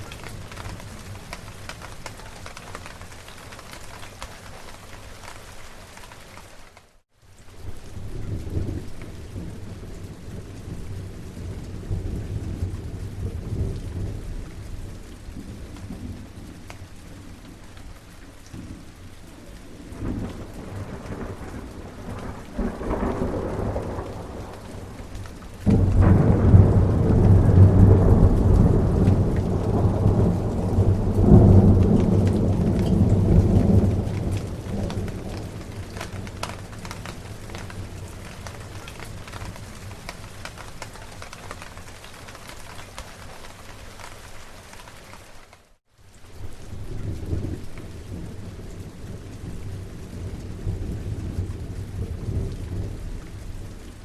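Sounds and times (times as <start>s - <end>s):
steady rain: 0.0s - 54.0s
low thunder rumbles: 7.6s - 41.9s, 46.5s - 54.0s
loud thunderclap: 19.9s - 38.0s.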